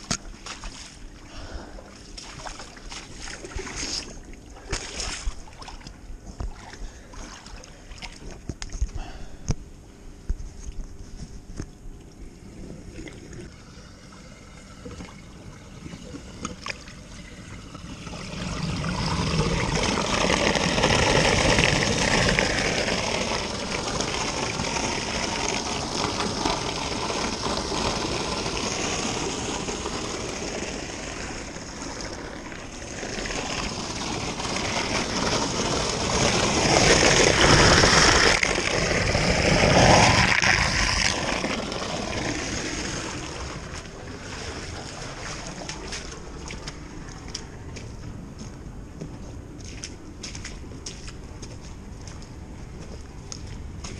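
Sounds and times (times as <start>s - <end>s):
water rushing down a drain: 12.8s - 47.7s.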